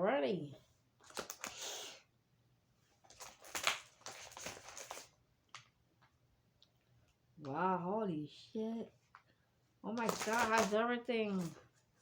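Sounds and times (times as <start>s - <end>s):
packaging rustling and crinkling: 1.0s - 1.6s, 3.0s - 5.6s, 10.0s - 11.8s.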